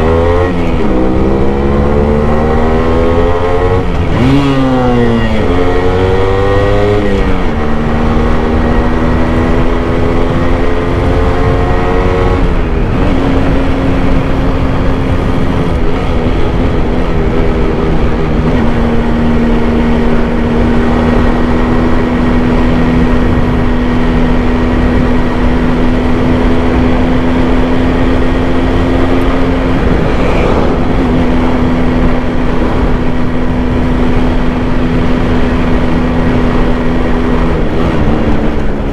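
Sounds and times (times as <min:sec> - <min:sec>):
two-stroke motorcycle engine: 0:00.0 - 0:38.9.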